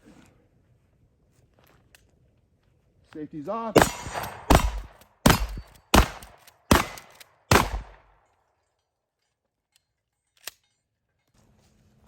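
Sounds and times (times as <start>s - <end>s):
shotgun shots: 3.7s - 8.2s.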